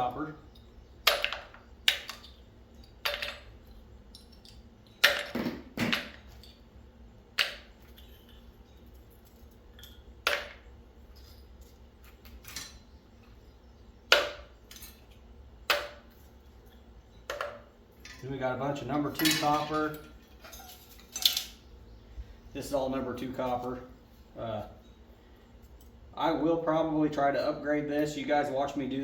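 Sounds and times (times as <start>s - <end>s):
copper pieces clinking into bowl: 19.1s - 21.6s.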